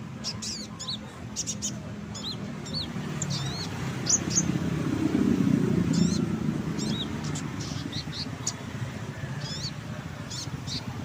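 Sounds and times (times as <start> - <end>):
songbird chirping: 0.0 - 11.0.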